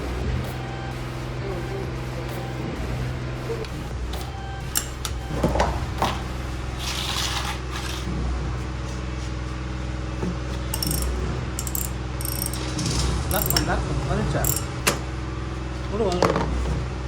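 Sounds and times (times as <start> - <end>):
metallic clicks and scrapes: 4.1 - 5.2, 10.6 - 13.8, 14.4 - 15.1.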